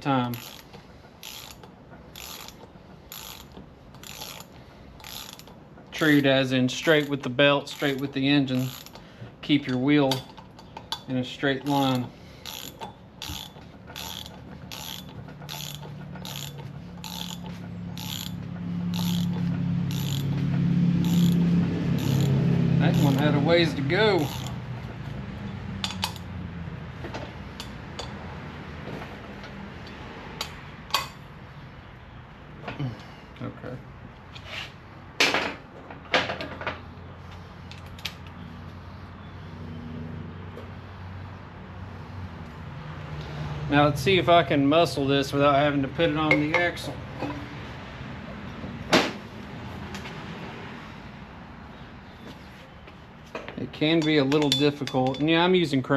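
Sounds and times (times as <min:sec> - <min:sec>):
metal tools clanking: 0:00.0 - 0:24.6, 0:25.8 - 0:26.3, 0:46.0 - 0:47.5, 0:53.4 - 0:55.6
hand ratchet clicking: 0:00.2 - 0:20.4, 0:21.0 - 0:24.6, 0:25.8 - 0:26.3.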